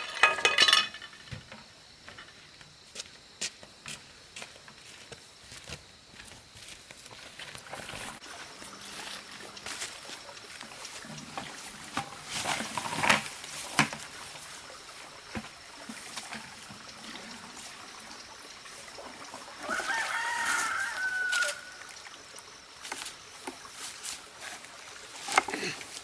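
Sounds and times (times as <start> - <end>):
rooster crowing: 19.6 - 22.0.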